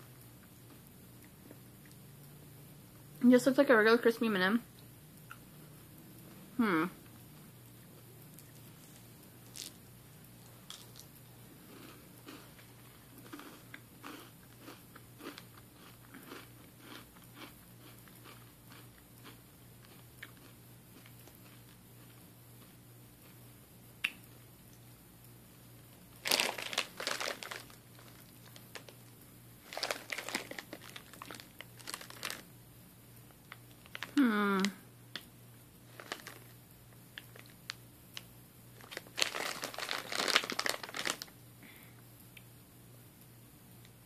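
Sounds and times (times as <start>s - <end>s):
person chewing crunchy candy: 8.4s - 9.8s, 10.7s - 23.4s, 26.2s - 32.5s, 35.9s - 36.5s, 38.8s - 41.3s
wrapper crinkling: 26.2s - 32.5s, 33.6s - 34.7s, 35.9s - 36.6s, 38.8s - 41.3s.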